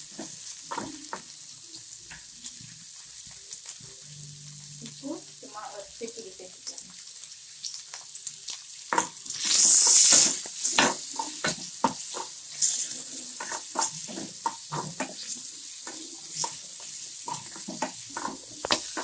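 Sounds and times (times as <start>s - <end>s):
vegetables frying in oil: 0.0s - 19.0s
spoon scraping a pan: 8.9s - 19.0s
loud sizzling hiss: 9.2s - 11.7s.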